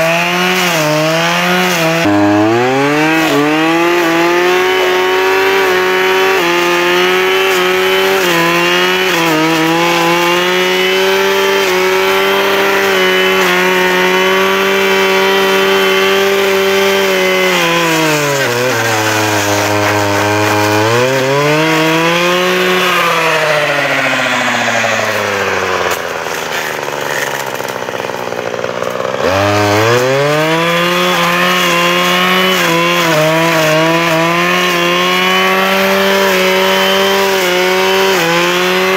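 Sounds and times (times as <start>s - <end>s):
brushcutter engine revving: 0.0s - 38.9s.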